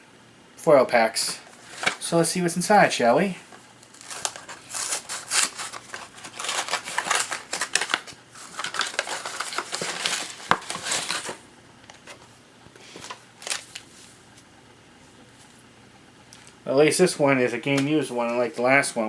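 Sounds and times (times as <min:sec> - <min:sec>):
packaging crackling rustle: 0:01.4 - 0:02.2, 0:03.5 - 0:14.5.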